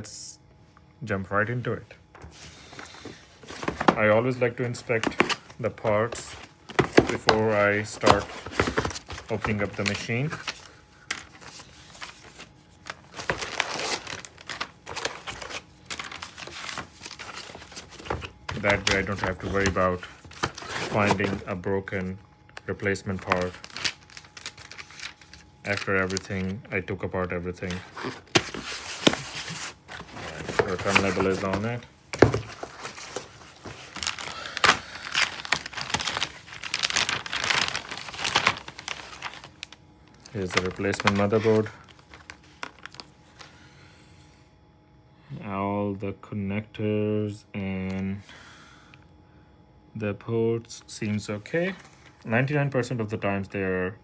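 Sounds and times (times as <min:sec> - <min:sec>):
packaging crinkling and rustling: 0:02.3 - 0:43.5.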